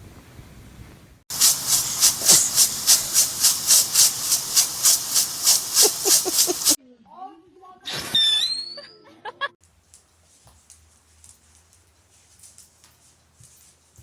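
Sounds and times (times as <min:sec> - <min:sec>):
dog panting rapidly: 0:01.3 - 0:06.8.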